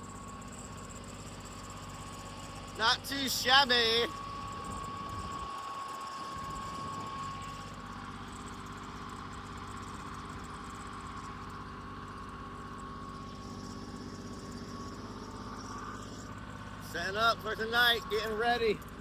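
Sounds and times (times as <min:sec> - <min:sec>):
engine idling: 0:00.0 - 0:19.0
thin high whine: 0:02.8 - 0:08.6.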